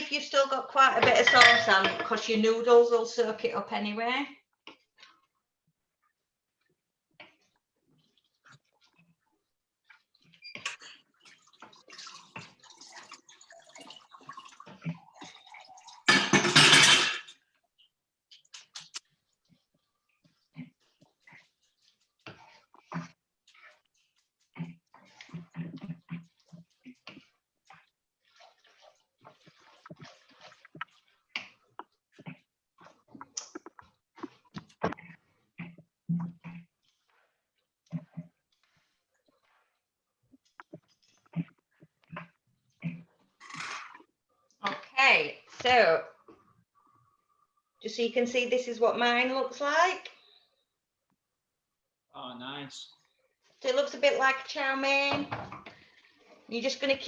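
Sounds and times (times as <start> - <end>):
kitchen clicks and scraping: 1.0 - 2.3, 16.1 - 17.5, 43.4 - 44.0.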